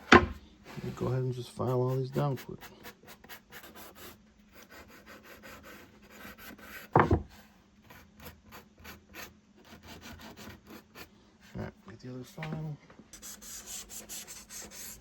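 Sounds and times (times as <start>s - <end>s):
hand file rubbing: 0.7s - 6.9s, 7.9s - 11.1s, 13.2s - 15.0s.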